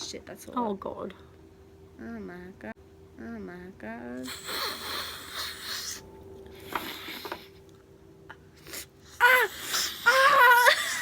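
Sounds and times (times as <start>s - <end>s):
high-pitched cries: 9.2s - 11.0s.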